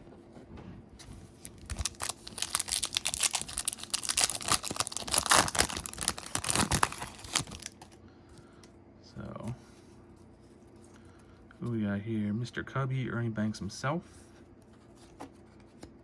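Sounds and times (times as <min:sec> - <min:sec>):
foil wrapper tearing and crinkling: 0:01.4 - 0:08.0.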